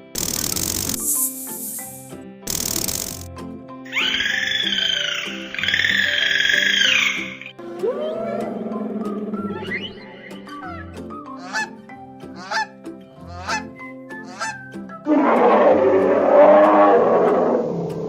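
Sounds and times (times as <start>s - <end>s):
background music: 0.0s - 18.0s
goose honking: 3.9s - 7.5s, 10.6s - 11.8s, 12.4s - 12.7s, 13.3s - 16.3s.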